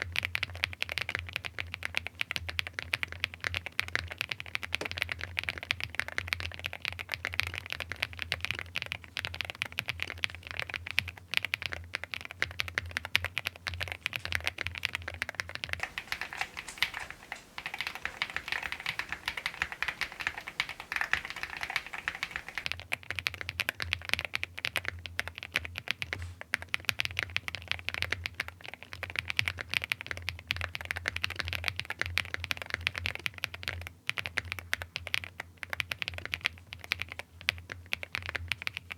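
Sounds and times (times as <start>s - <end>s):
fast typing on mechanical keyboard: 15.8s - 22.7s, 32.4s - 38.9s.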